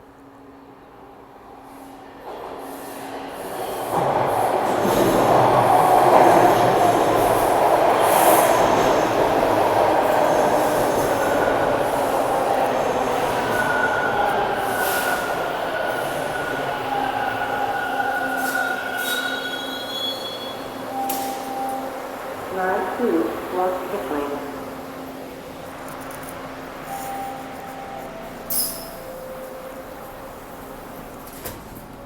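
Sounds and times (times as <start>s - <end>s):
subway train rumbling: 0.0s - 32.0s.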